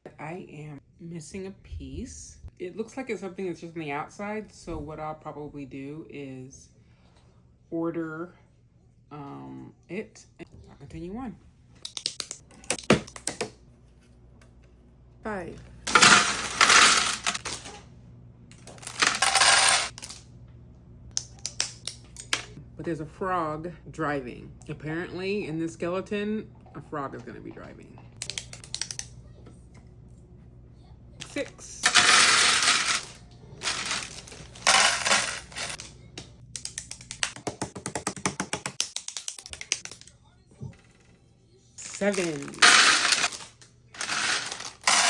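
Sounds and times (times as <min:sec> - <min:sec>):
plastic pieces clattering onto surface: 0:15.9 - 0:17.8, 0:18.5 - 0:20.2, 0:31.2 - 0:35.9, 0:41.8 - 0:45.0.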